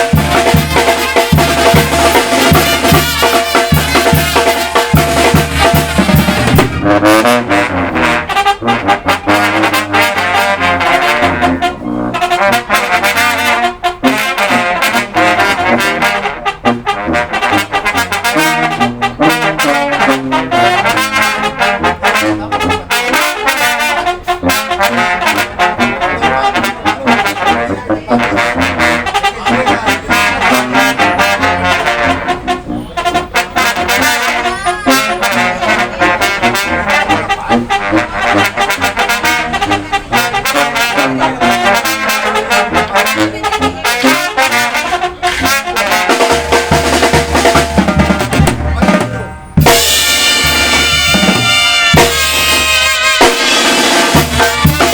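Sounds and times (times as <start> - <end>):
bass drum: 0.0 - 7.5, 46.2 - 54.9
snare drum: 0.0 - 7.7, 45.3 - 54.9
trumpets and trombones playing: 0.0 - 54.9.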